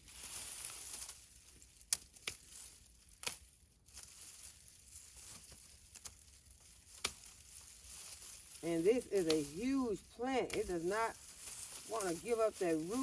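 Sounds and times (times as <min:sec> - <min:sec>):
dry plants rustling and crackling: 0:00.0 - 0:13.0
stalks snapping: 0:01.8 - 0:04.2, 0:05.1 - 0:06.2, 0:06.8 - 0:13.0.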